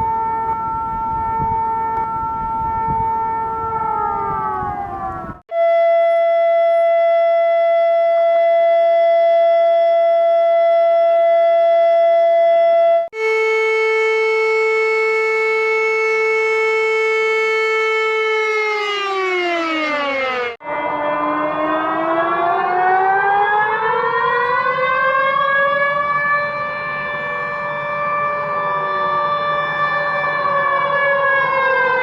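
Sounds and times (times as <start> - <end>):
siren tone sliding in pitch: 0.0 - 32.0
multi-pitched alarm tone: 5.5 - 25.8.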